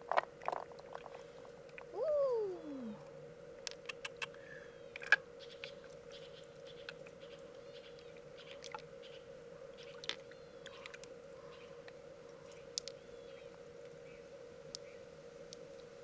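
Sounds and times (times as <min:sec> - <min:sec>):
low hum: 0:01.2 - 0:03.6.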